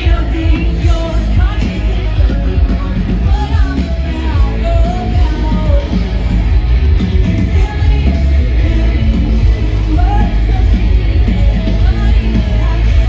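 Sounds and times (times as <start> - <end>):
loud rock music with singing: 0.0 - 13.0.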